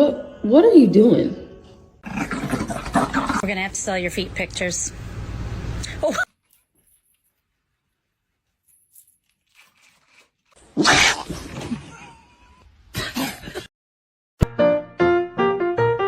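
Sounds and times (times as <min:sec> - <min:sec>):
rough animal call: 0:02.0 - 0:03.4.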